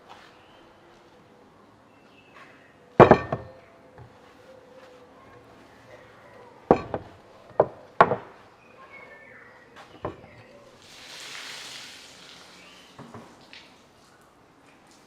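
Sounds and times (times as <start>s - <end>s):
sharp knocks: 3.0s - 3.6s, 6.7s - 8.4s.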